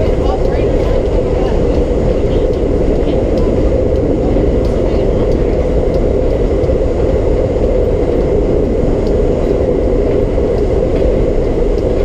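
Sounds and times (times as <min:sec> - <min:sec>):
subway car rumbling on rails: 0:00.0 - 0:12.0.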